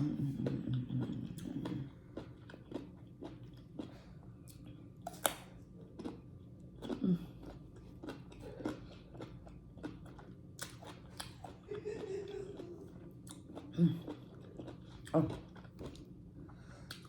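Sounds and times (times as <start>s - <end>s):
chewing juicy fruit: 0.0s - 17.0s.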